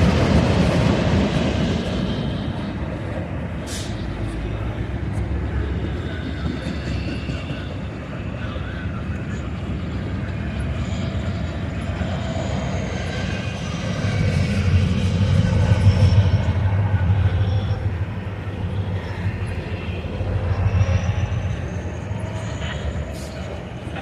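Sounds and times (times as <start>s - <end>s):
freight train rumbling past: 0.0s - 24.0s.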